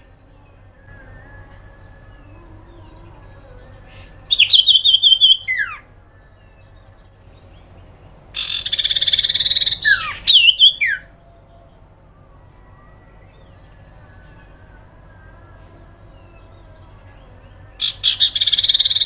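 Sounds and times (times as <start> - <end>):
harsh buzzing bird trill: 1.8 - 5.9, 8.3 - 11.1, 16.0 - 19.0.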